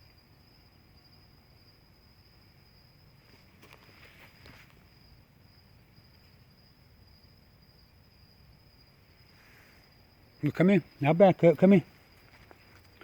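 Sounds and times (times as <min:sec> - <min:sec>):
high-pitched insect trill: 0:00.0 - 0:13.0
faint rustles: 0:03.1 - 0:05.1, 0:09.0 - 0:10.3, 0:11.9 - 0:13.0.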